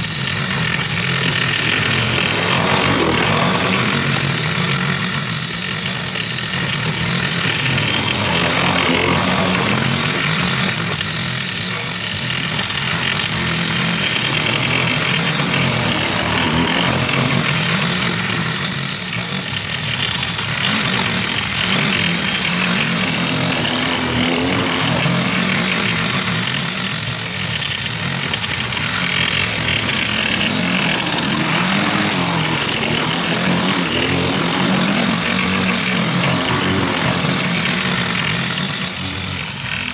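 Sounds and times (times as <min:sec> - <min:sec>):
lawn mower engine running: 0:00.0 - 0:39.9.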